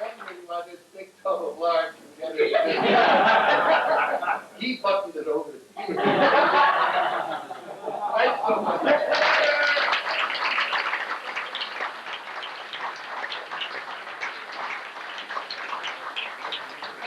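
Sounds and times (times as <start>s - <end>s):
audience applauding: 6.6s - 17.0s.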